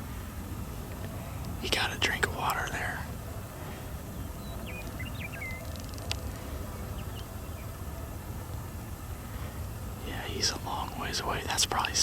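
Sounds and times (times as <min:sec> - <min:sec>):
small bird chirping: 0:03.8 - 0:07.7.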